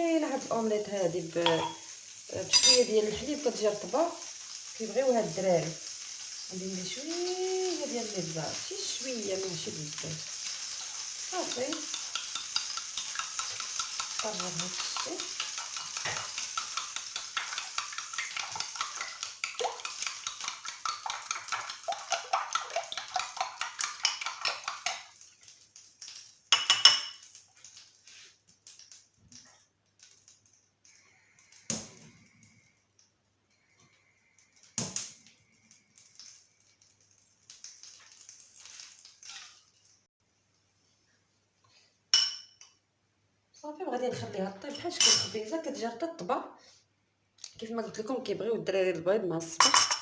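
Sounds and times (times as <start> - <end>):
kitchenware knocks and clinks: 1.4 - 1.8, 49.6 - 50.0
whisk clicking in bowl: 11.3 - 25.1.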